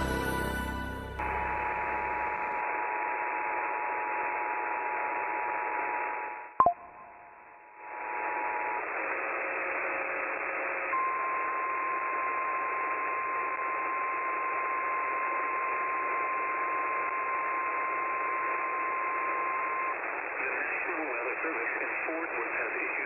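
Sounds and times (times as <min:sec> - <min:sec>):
steady alert tone: 0:00.0 - 0:02.6
two-tone chord: 0:00.0 - 0:02.6
radio static: 0:07.9 - 0:10.9, 0:18.4 - 0:23.0.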